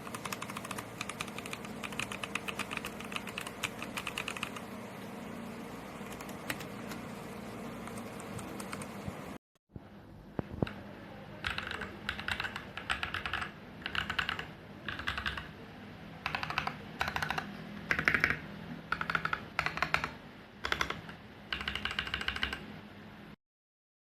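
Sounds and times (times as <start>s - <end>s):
mechanical keyboard typing: 0.0s - 4.8s, 6.0s - 9.2s, 11.4s - 15.6s, 16.2s - 22.7s.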